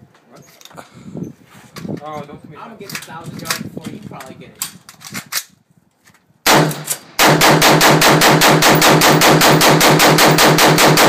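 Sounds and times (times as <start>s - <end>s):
rifle shots: 6.5s - 11.0s.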